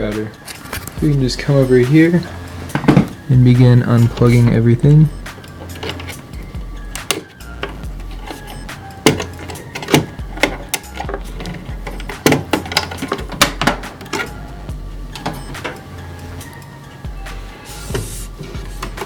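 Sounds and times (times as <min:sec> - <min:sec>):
background music with bass pulse: 0:00.0 - 0:19.0.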